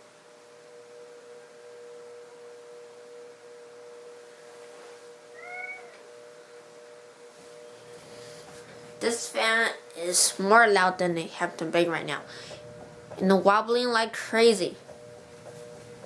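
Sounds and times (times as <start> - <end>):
ceiling fan motor humming: 0.0 - 16.0
cat meowing: 5.4 - 6.1.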